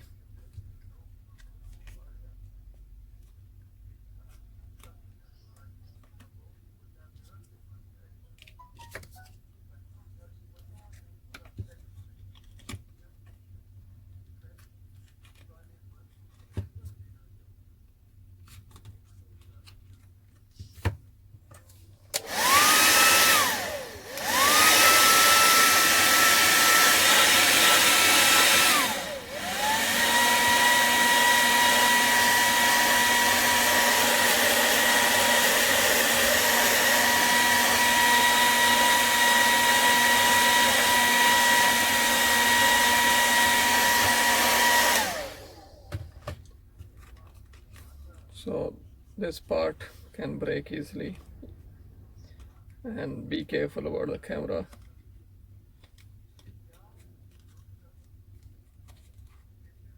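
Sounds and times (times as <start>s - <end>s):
hot-air blower whining: 22.1s - 46.4s.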